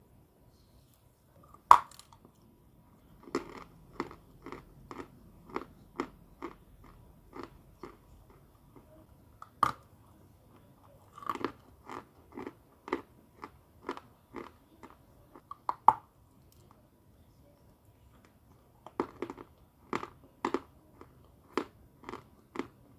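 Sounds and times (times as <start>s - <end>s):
crunching chews: 3.2s - 9.9s, 10.6s - 16.7s, 18.2s - 22.9s.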